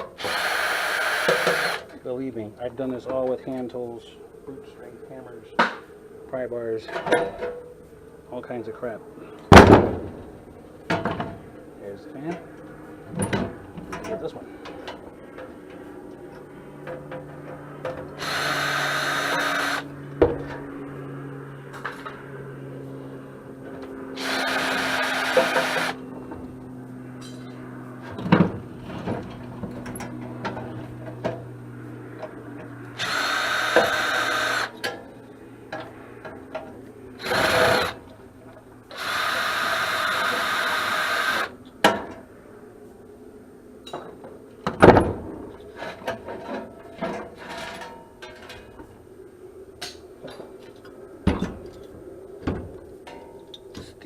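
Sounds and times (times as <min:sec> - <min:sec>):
power drill spinning: 0:00.1 - 0:01.9, 0:18.2 - 0:19.9, 0:24.2 - 0:26.0, 0:33.0 - 0:34.8, 0:37.2 - 0:38.0, 0:38.9 - 0:41.5
metal parts clicking and clanking: 0:45.8 - 0:48.9.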